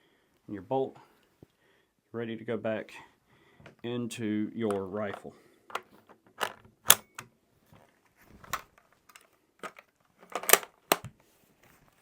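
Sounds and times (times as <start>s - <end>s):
rifle bolt metallic clicks: 6.4s - 7.3s, 10.4s - 11.1s.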